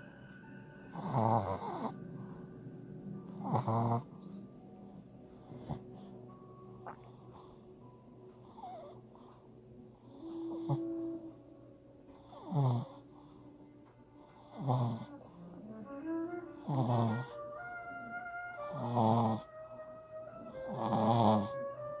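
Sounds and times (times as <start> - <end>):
background music: 0.0 - 22.0
puppy snoring: 0.8 - 2.5, 3.3 - 6.1, 6.8 - 7.8, 8.4 - 11.5, 12.1 - 13.6, 14.2 - 15.8, 16.4 - 17.5, 18.5 - 19.6, 20.4 - 21.8.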